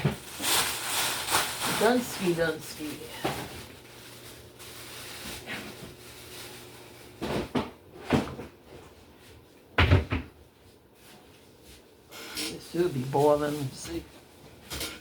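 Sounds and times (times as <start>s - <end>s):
kitchen knocks and clunks: 9.8s - 10.4s.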